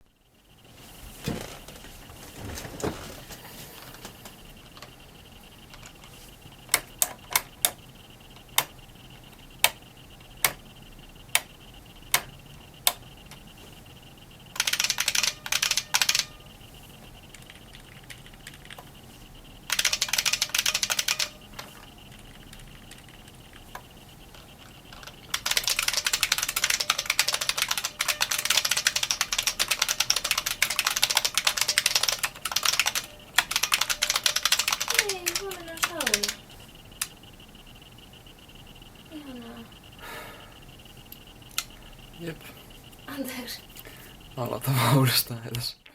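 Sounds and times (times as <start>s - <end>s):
faint high whine: 0.0s - 45.9s
mechanical keyboard typing: 4.6s - 13.5s, 14.4s - 16.6s, 17.2s - 18.9s, 19.6s - 37.2s.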